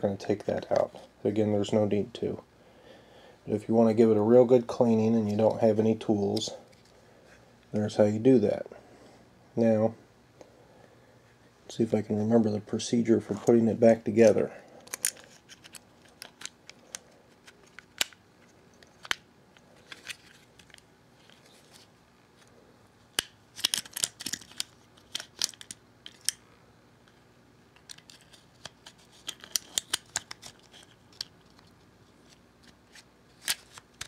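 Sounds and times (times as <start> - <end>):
pistol parts clicking: 14.8 - 17.0.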